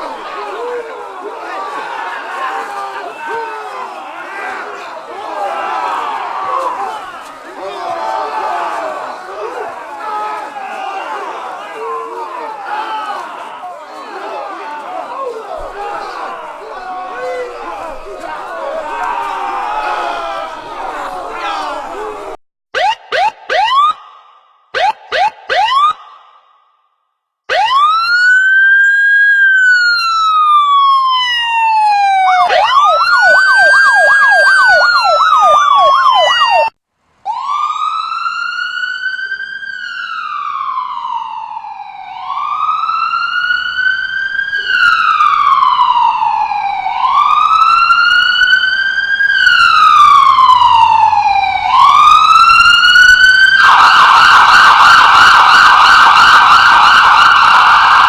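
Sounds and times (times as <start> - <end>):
siren yelp: 22.8 - 24.0, 24.8 - 26.1, 27.5 - 36.7, 37.3 - 58.0
siren wailing: 27.5 - 36.7, 37.3 - 58.0.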